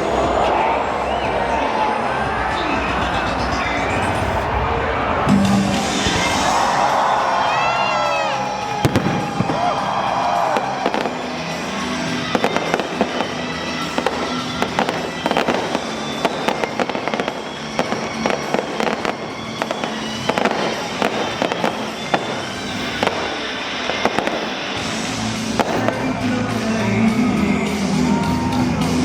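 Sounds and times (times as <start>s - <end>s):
music playing: 0.0s - 29.0s
fireworks bangs and crackles: 5.2s - 27.0s.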